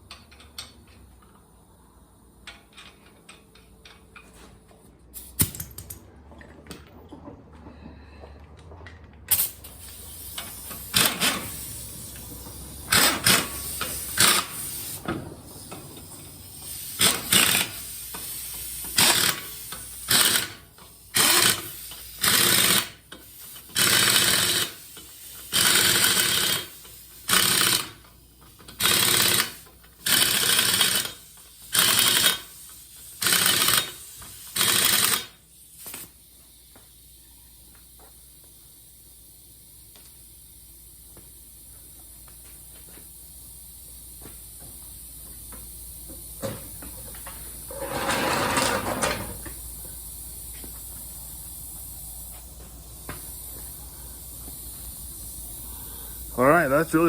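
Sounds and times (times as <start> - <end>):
impact wrench bursts: 9.3 - 36.1.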